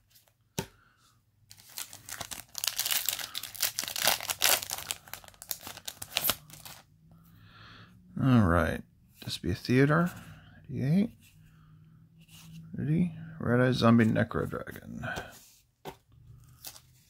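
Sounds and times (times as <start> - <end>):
foil pack tearing and crinkling: 1.6 - 6.8.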